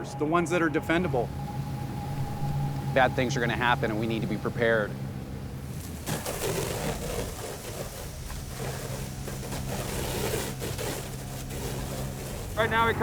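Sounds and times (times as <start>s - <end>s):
rushing hiss: 5.8s - 13.0s.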